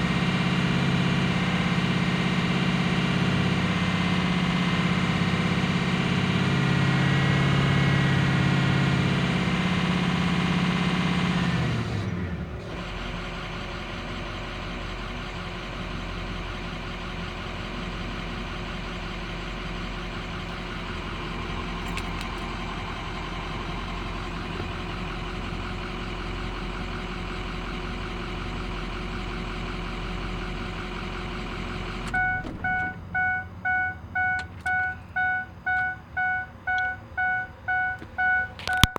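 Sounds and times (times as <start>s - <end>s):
diesel engine running: 0.0s - 38.9s
vehicle warning chime beeping: 32.1s - 38.9s.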